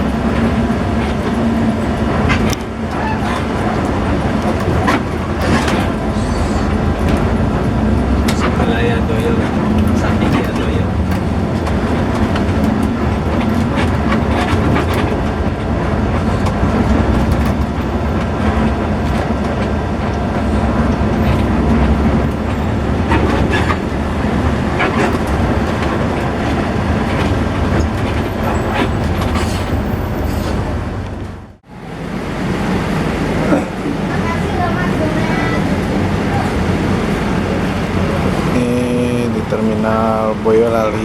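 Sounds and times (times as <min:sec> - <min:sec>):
bus engine rumble: 0:00.0 - 0:41.0
road noise: 0:00.0 - 0:41.0.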